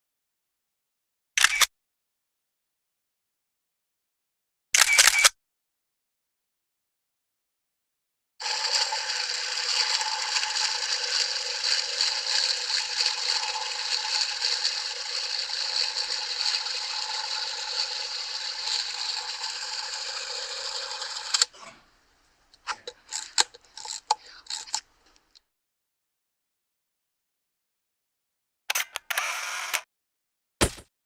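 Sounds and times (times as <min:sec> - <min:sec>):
mechanical camera clicks: 0:01.4 - 0:01.7, 0:04.8 - 0:05.3, 0:28.7 - 0:29.8
camera winding mechanism whirring: 0:04.8 - 0:05.3, 0:08.4 - 0:21.5, 0:23.1 - 0:24.9, 0:28.7 - 0:29.8.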